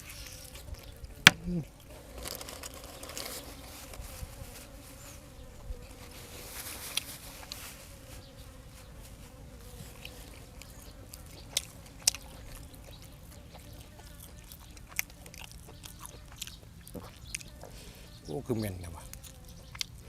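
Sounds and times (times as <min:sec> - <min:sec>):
soft eating clicks: 0:00.2 - 0:04.0, 0:09.9 - 0:17.8, 0:19.0 - 0:20.0.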